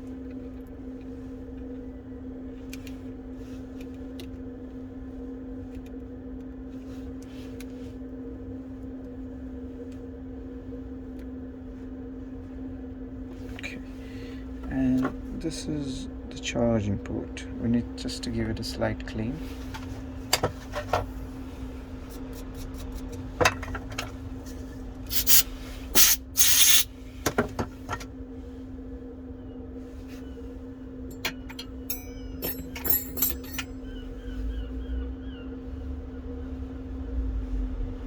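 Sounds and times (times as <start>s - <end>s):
steady low hum: 0.0s - 38.0s
short loud hissing bursts: 25.1s - 26.9s
small tools clicking and scraping: 25.1s - 26.9s, 31.1s - 33.7s.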